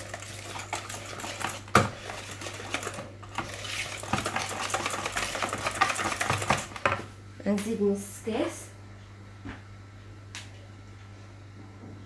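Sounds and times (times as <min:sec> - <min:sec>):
whisk scraping a bowl: 0:00.0 - 0:06.8.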